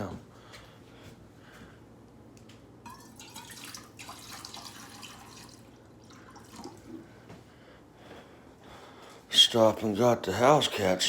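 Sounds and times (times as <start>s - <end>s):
water splashing into a bowl: 2.9s - 7.0s.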